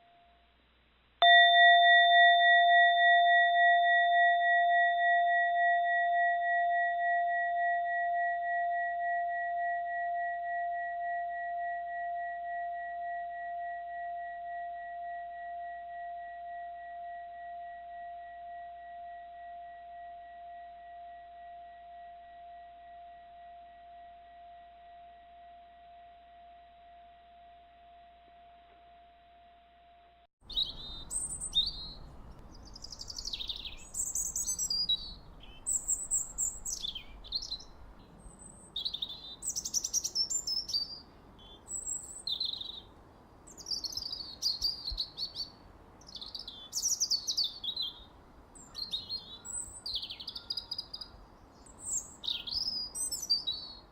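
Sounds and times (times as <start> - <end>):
bell ringing: 1.2 - 6.4
birds chirping and singing: 30.5 - 37.8.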